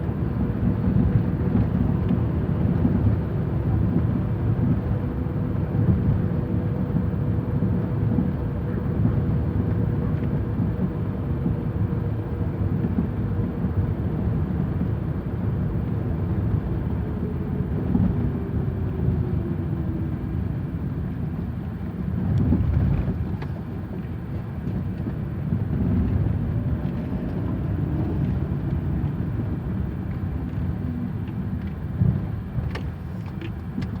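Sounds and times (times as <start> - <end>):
car road noise: 12.8 - 34.0.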